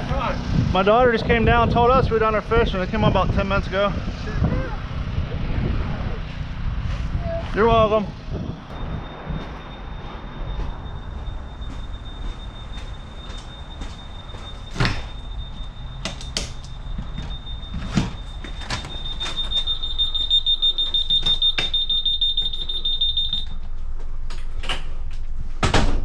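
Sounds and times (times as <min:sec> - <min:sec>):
high-pitched electronic alarm tone: 0:08.4 - 0:23.6.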